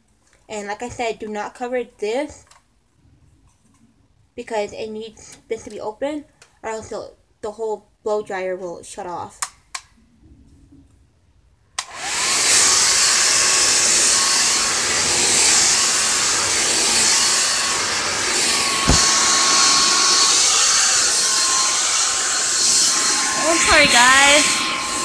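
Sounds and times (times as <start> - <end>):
hair dryer blowing with whine: 11.8 - 25.0
knock: 18.8 - 19.2.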